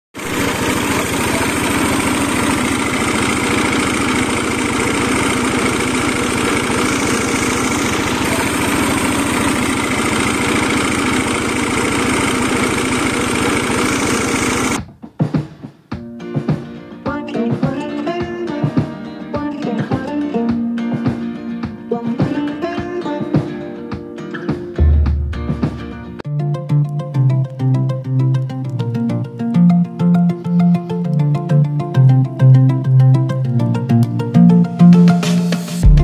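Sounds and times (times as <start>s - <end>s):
plucked guitar music: 0.2s - 14.5s, 15.9s - 36.0s
grinding machine droning: 0.2s - 14.8s.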